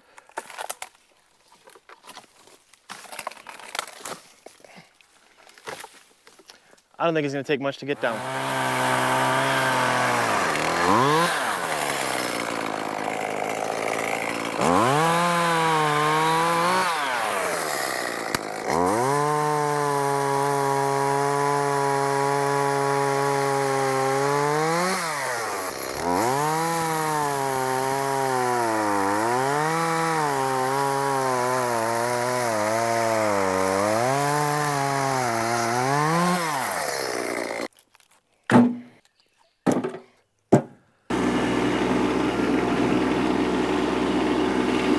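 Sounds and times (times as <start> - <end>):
chainsaw cutting wood: 7.9 - 37.7, 40.6 - 44.9.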